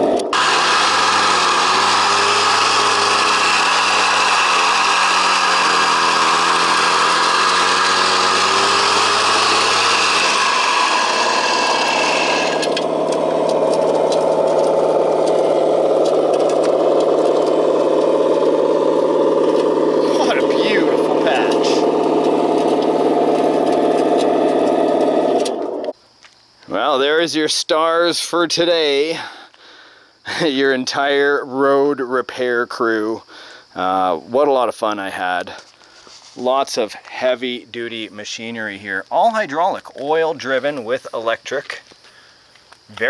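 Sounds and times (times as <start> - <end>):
hydraulic pumps whining: 0.0 - 26.0.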